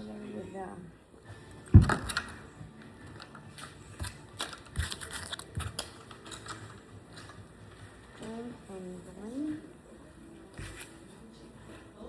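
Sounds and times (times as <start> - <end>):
toy car and packaging clicking: 3.2 - 7.4.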